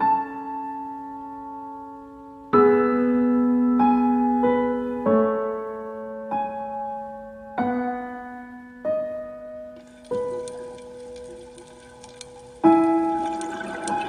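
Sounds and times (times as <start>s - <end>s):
slow soft piano chords: 0.0s - 14.0s.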